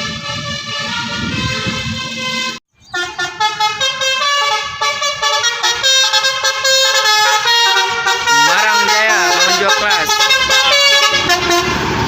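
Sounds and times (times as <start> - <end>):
bus multi-tone horn tune: 0.0 - 12.0.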